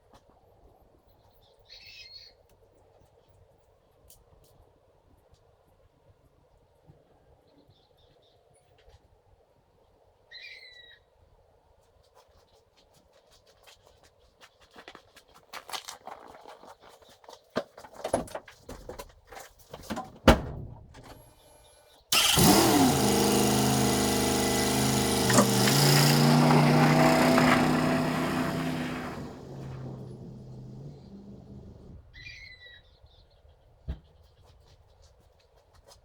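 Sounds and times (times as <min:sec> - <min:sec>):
engine running loudly: 0:22.2 - 0:32.0.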